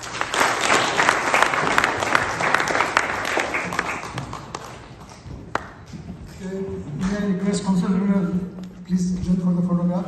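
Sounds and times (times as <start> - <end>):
audience applauding: 0.0 - 5.9.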